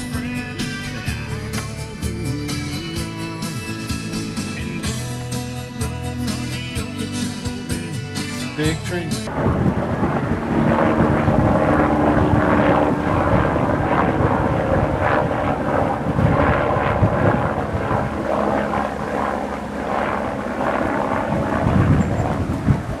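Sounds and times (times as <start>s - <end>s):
engine droning: 0.0s - 23.0s
rushing noise: 9.2s - 15.2s.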